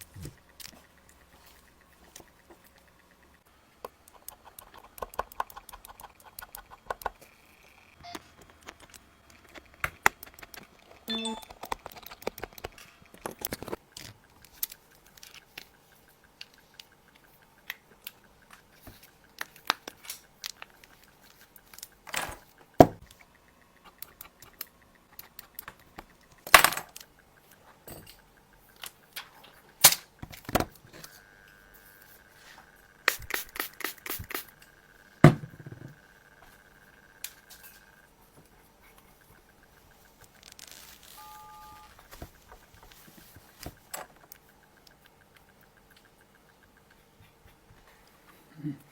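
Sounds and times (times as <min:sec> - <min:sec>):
short beeps: 0:11.1 - 0:11.5, 0:41.2 - 0:42.0
steady high tone: 0:11.1 - 0:11.5.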